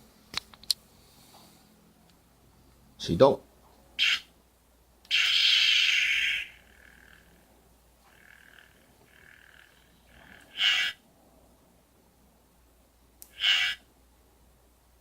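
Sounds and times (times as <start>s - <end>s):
faint wavering electronic hum: 3.8s - 13.2s
lightsaber sound effect bursts: 5.1s - 7.4s, 8.1s - 11.0s.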